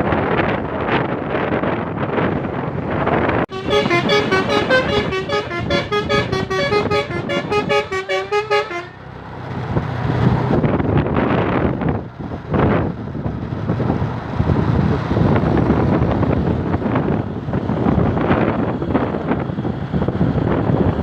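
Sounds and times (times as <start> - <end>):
wind buffeting microphone: 0.0 - 8.3, 9.0 - 21.0
multi-tone horn tune: 3.5 - 9.0.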